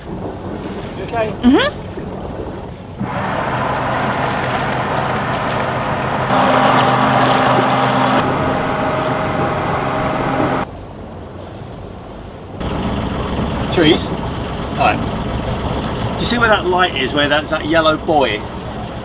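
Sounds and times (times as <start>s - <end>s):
boat engine running: 3.0s - 10.7s, 12.6s - 19.0s.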